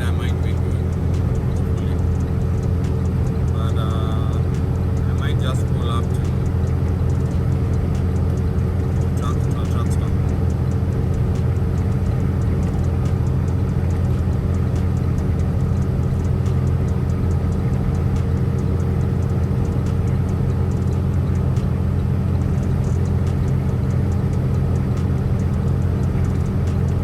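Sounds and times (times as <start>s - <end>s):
faint ticks: 0.0s - 27.0s
road noise: 0.0s - 27.0s
truck diesel engine drone: 0.0s - 27.0s.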